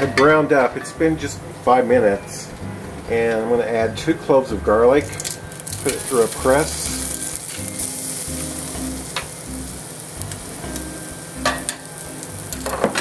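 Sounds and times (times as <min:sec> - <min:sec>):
garlic sizzling in a frying pan: 0:05.0 - 0:13.0.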